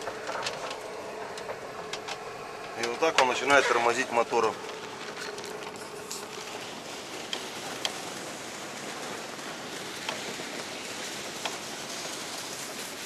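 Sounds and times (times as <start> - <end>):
vehicle driving through snow: 0.0 - 13.0.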